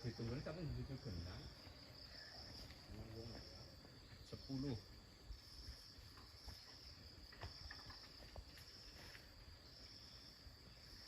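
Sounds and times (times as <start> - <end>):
high-pitched insect trill: 0.0 - 11.0.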